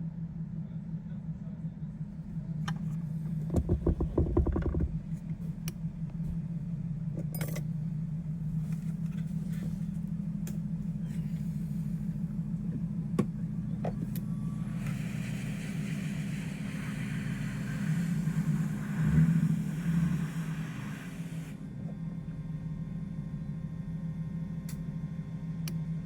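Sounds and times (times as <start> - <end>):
low vehicle hum: 0.0 - 26.0
hiss: 14.6 - 21.6.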